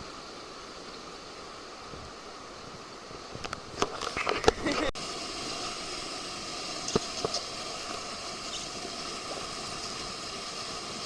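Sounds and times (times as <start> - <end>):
river rapid rushing: 0.2 - 11.0.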